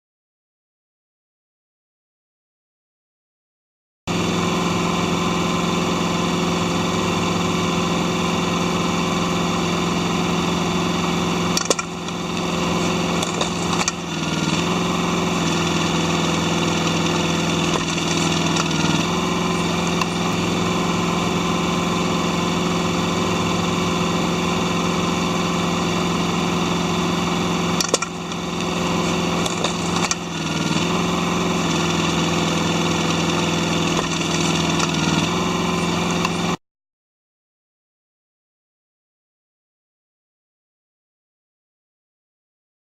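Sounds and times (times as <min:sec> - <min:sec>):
mini excavator diesel engine running: 0:04.1 - 0:36.6
sharp clicks: 0:11.6 - 0:14.7, 0:15.4 - 0:19.1, 0:27.8 - 0:30.9, 0:31.7 - 0:35.3.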